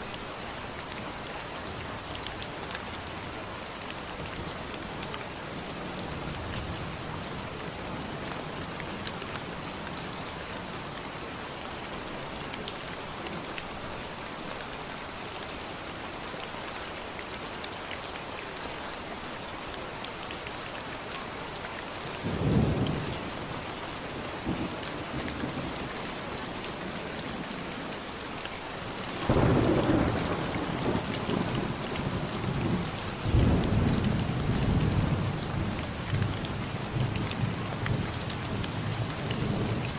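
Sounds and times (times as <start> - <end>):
steady rain: 0.0 - 39.9.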